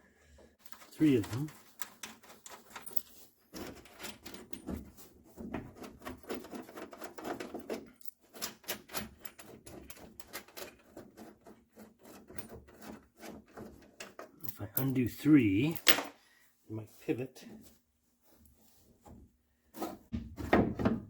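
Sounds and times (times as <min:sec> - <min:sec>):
metal parts clicking and rattling: 0:00.6 - 0:16.2.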